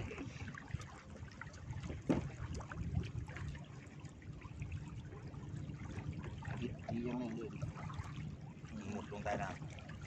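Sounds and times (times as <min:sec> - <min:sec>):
water lapping against boat hull: 0:00.0 - 0:10.0.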